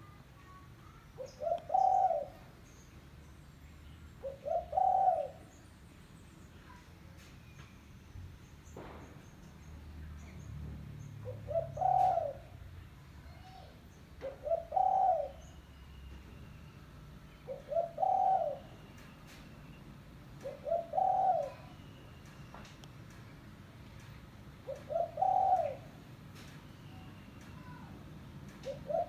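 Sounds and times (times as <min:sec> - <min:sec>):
dove cooing: 0:01.2 - 0:02.5, 0:04.2 - 0:05.5, 0:11.2 - 0:12.6, 0:13.3 - 0:15.6, 0:17.5 - 0:18.8, 0:20.4 - 0:21.8, 0:24.6 - 0:26.1, 0:28.6 - 0:29.0.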